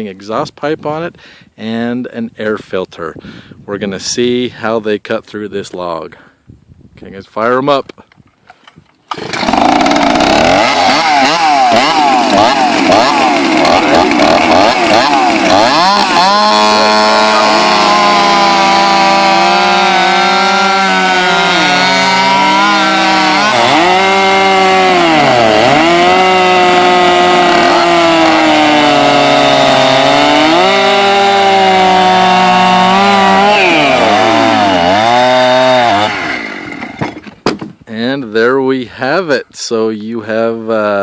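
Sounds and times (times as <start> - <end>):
chainsaws cutting log: 9.0 - 37.8.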